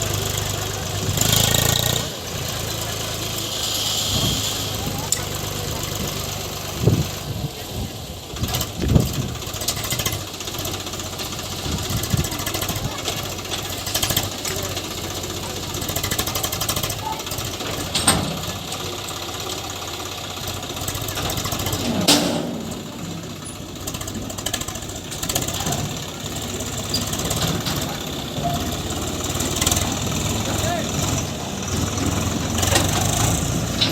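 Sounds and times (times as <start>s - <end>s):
diesel engines running: 0.0s - 33.9s.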